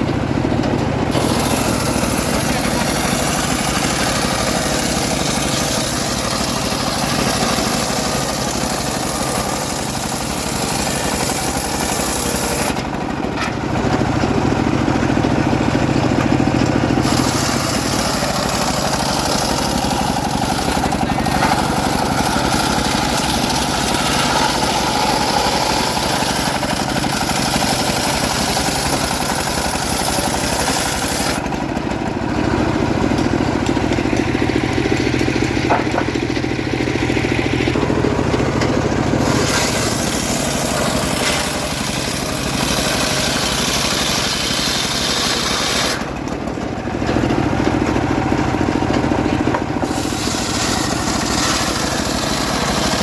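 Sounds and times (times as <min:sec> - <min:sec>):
sawmill engine running: 0:00.0 - 0:53.0
saw ripping log: 0:01.0 - 0:46.6, 0:49.5 - 0:53.0.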